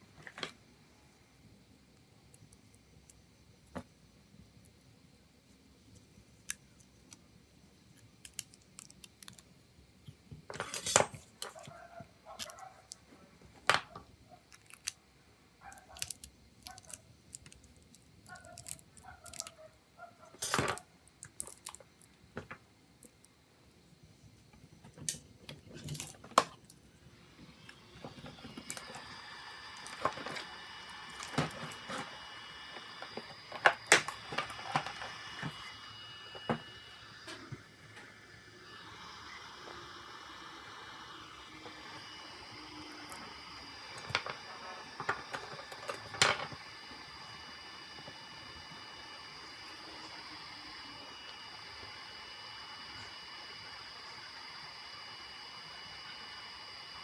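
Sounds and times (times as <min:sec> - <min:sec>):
small powered tool running: 0:27.2 - 0:57.0.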